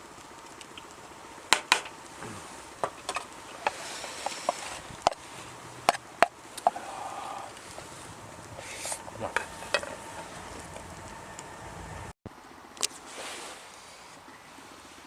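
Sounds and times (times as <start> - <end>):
utensil scraping frying pan: 2.2 - 12.1.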